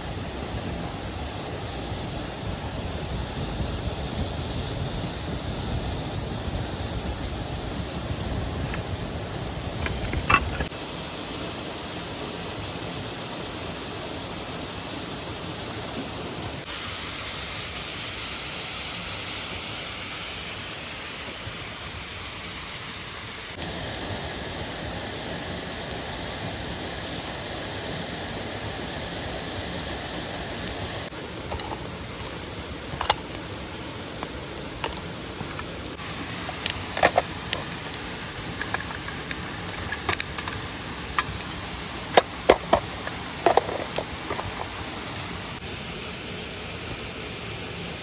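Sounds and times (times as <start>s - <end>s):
waterfall and stream rushing: 4.7s - 48.0s.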